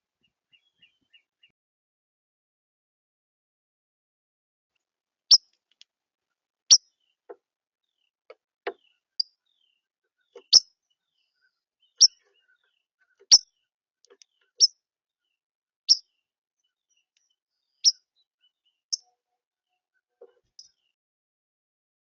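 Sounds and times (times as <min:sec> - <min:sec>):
bird chip calls: 0:08.7 - 0:13.5.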